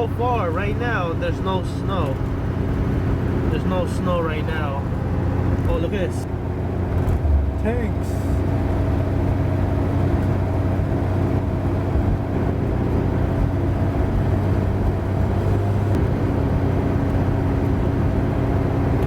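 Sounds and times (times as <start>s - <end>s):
car engine and road drone: 0.0s - 19.0s.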